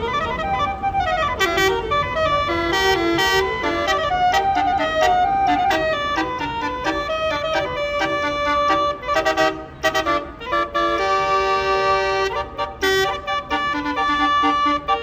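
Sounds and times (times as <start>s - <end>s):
multi-note bus air horn melody: 0.0s - 15.0s.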